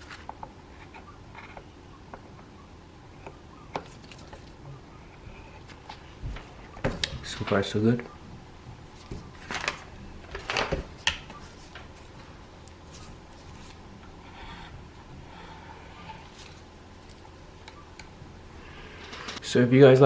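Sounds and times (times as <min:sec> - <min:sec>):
faint rubbing and rustling: 0:11.3 - 0:17.6.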